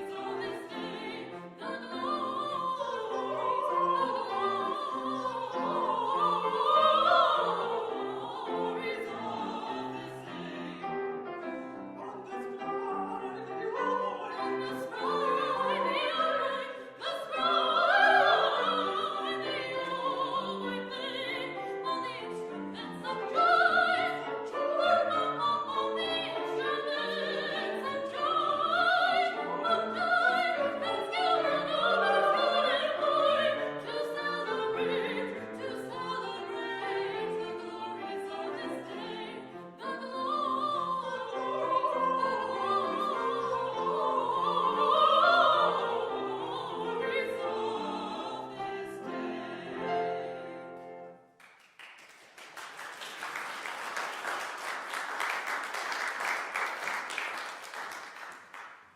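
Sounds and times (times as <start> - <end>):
classical solo singing: 0.0 - 50.9
audience applause: 51.4 - 58.8.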